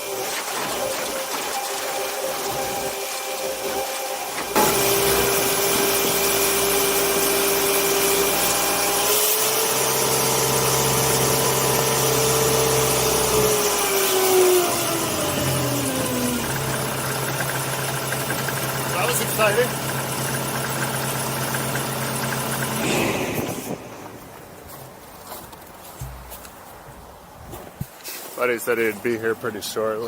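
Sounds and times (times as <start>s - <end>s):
heavy machinery engine whine: 4.2s - 25.1s.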